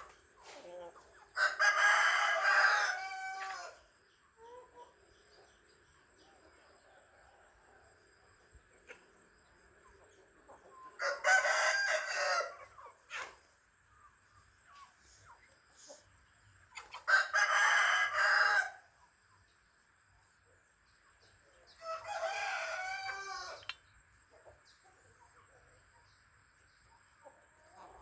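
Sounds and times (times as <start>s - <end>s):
rooster crowing: 1.4s - 3.8s, 11.0s - 12.6s, 17.1s - 18.8s, 21.8s - 23.6s.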